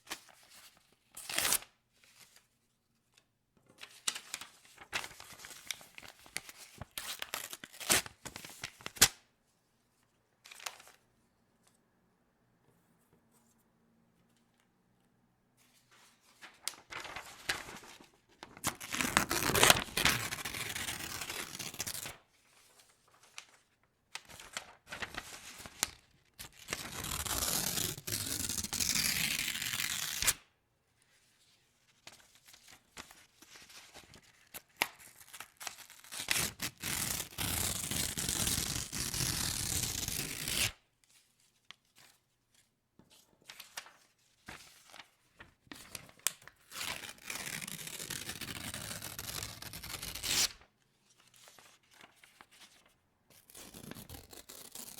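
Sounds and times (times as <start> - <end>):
paper rustling and crinkling: 15.7 - 27.8, 41.2 - 54.9
paper tearing: 17.0 - 17.7, 18.5 - 22.2, 26.5 - 30.4, 34.8 - 40.8, 46.7 - 50.6, 53.4 - 54.9.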